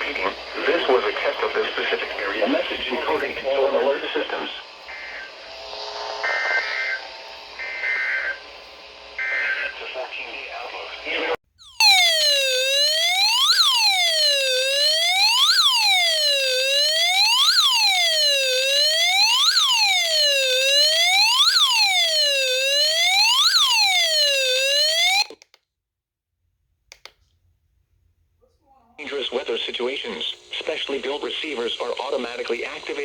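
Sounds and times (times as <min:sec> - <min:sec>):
electronic wailing siren: 0:00.0 - 0:10.7, 0:11.6 - 0:25.4
faint clicks: 0:26.9 - 0:27.4.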